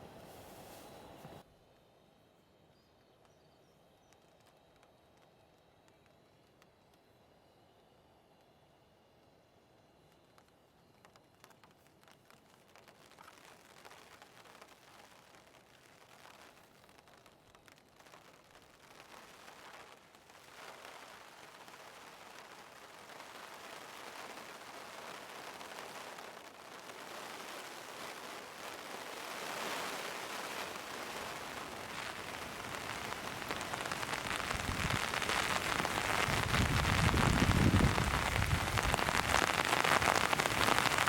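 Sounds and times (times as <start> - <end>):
heavy rain falling: 18.9 - 41.0.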